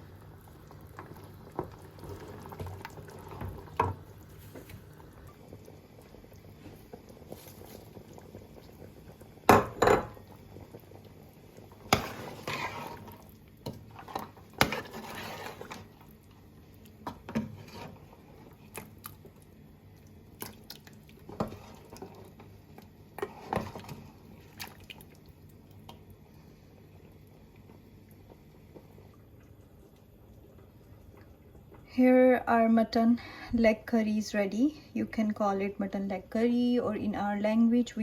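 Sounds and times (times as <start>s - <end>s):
liquid sloshing: 11.6s - 22.5s, 23.2s - 25.3s.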